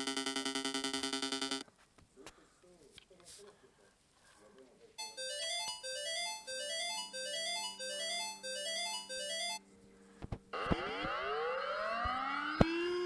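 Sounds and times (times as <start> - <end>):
siren winding up: 10.6 - 13.0
synthesized alarm jingle: 10.6 - 13.0.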